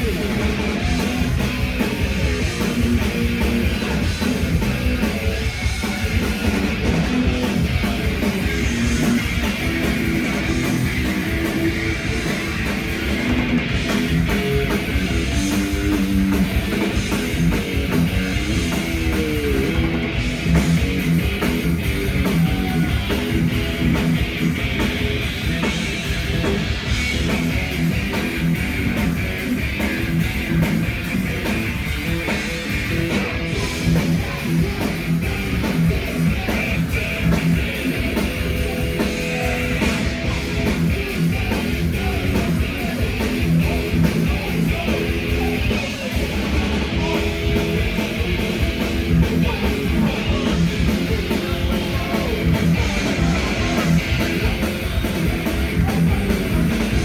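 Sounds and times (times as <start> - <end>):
thrash band playing live: 0.0 - 57.0
shouted vocals: 21.9 - 23.9, 33.0 - 57.0.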